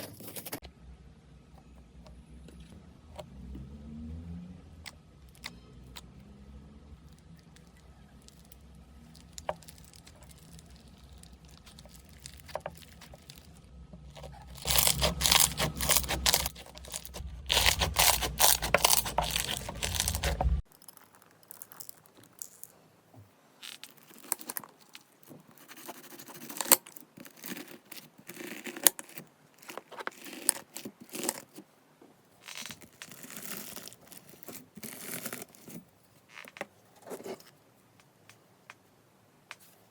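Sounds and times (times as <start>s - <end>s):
slime crackling and popping: 7.4s - 22.6s.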